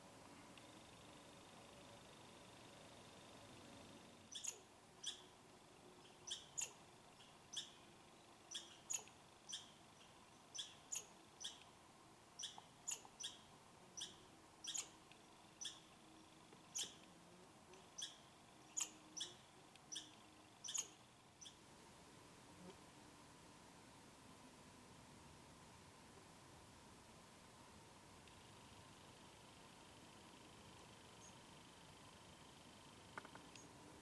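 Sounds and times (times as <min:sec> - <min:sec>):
animal chip calls: 0:04.3 - 0:05.2, 0:06.3 - 0:06.8, 0:08.5 - 0:09.7, 0:14.0 - 0:15.0, 0:18.8 - 0:21.5.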